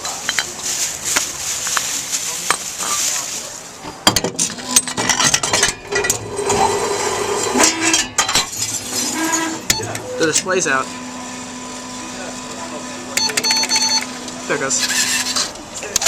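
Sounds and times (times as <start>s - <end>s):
machine motor humming: 8.5s - 16.0s.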